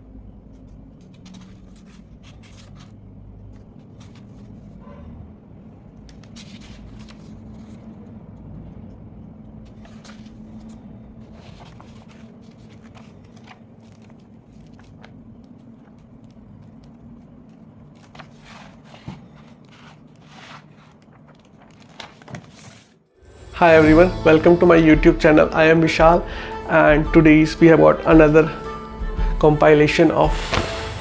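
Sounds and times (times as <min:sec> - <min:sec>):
steady low hum: 0:23.2 - 0:31.0.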